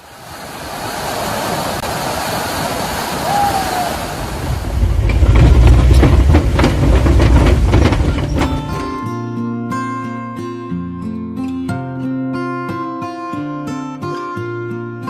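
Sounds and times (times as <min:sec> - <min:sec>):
waterfall roaring: 0:00.0 - 0:08.9
heavy low rumble with knocks: 0:04.4 - 0:09.1.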